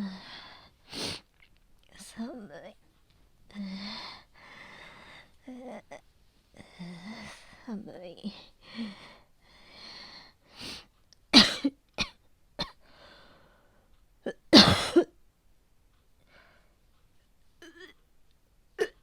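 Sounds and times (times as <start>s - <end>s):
faint breathing: 3.5s - 5.4s, 8.3s - 10.9s, 12.8s - 14.0s, 16.2s - 16.9s
woman coughing: 11.4s - 12.8s, 14.3s - 15.1s, 18.8s - 19.0s.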